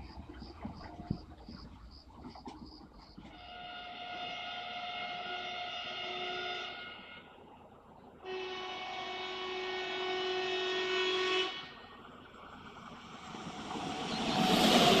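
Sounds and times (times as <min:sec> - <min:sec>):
passing train rumble: 0:00.0 - 0:15.0
train horn blast: 0:03.3 - 0:07.4, 0:08.2 - 0:11.9.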